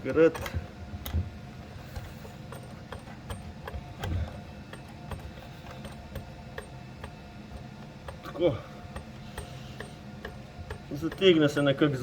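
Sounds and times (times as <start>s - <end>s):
connector screwing clicks: 1.9s - 11.7s.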